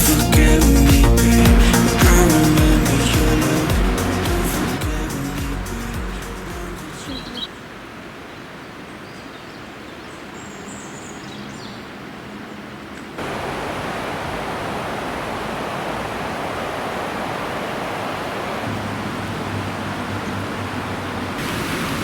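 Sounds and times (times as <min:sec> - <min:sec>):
waterfall rushing: 0:00.0 - 0:08.1, 0:13.2 - 0:22.0.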